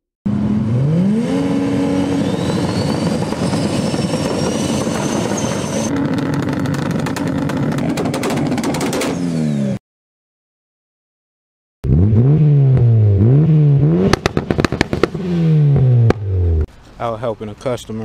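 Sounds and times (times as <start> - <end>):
car engine revving: 0.3 - 9.8, 11.8 - 16.7
engine crackling pops: 5.9 - 9.2, 14.0 - 16.3.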